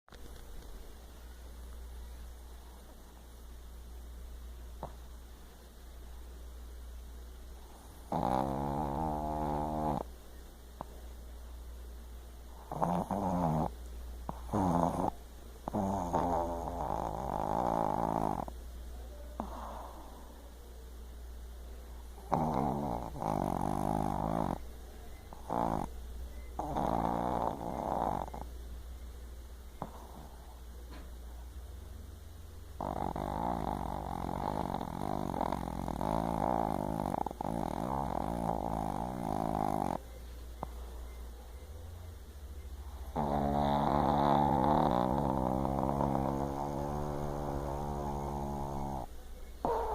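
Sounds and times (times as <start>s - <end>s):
rasping snores: 8.1s - 10.1s, 12.6s - 13.7s, 14.3s - 18.5s, 22.2s - 24.6s, 25.3s - 25.9s, 26.6s - 28.5s, 32.8s - 40.0s, 42.9s - 49.9s.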